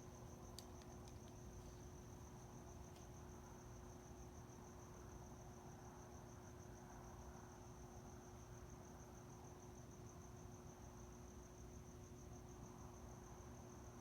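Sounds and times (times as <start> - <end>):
crickets chirping: 0.0 - 14.0.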